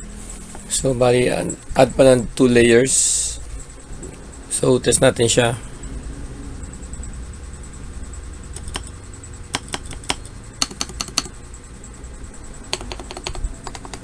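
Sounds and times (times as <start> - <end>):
mechanical keyboard keystrokes: 12.7 - 14.0.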